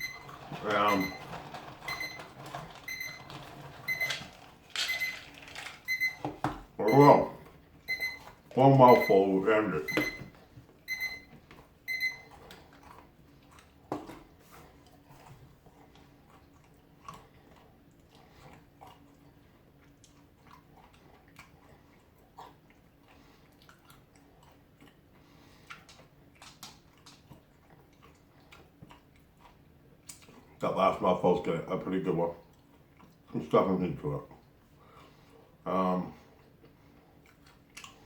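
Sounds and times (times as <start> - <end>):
peanuts being chewed: 12.3 - 30.7, 36.4 - 38.0.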